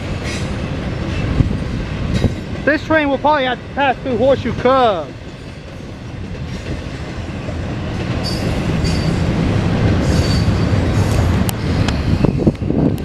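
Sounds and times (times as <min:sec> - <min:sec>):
freight train wheels rumbling: 0:00.0 - 0:13.0
high-pitched wheel squeals: 0:10.0 - 0:10.8.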